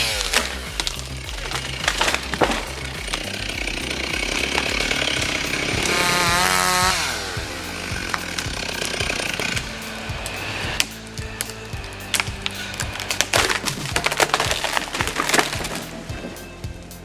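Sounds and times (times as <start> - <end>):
chainsaw cutting wood: 0.0 - 10.9.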